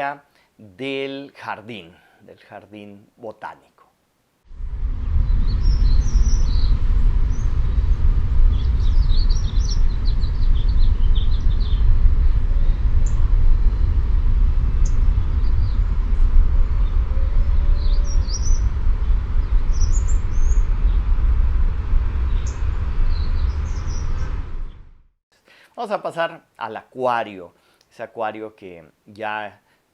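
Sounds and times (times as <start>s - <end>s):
low background rumble: 4.4s - 25.2s
small birds chirping: 5.3s - 7.6s, 8.5s - 11.9s, 17.8s - 21.0s.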